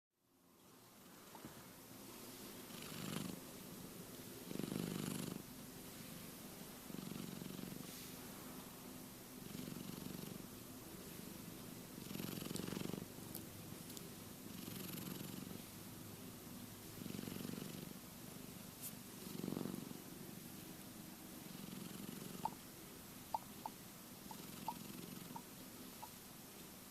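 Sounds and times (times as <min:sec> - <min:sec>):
cat snore-like breathing: 0:02.7 - 0:03.4, 0:04.4 - 0:05.4, 0:06.9 - 0:08.1, 0:09.4 - 0:10.4, 0:12.0 - 0:13.1, 0:14.5 - 0:15.6, 0:17.0 - 0:18.0, 0:19.2 - 0:20.0, 0:21.4 - 0:22.6, 0:24.3 - 0:25.4.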